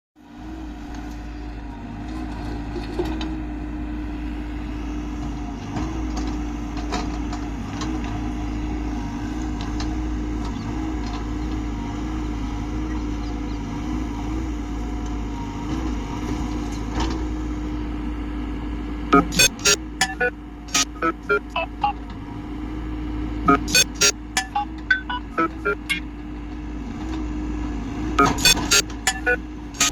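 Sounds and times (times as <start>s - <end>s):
diesel engine running: 0.3s - 29.9s
sharp metal clanks: 28.4s - 29.9s.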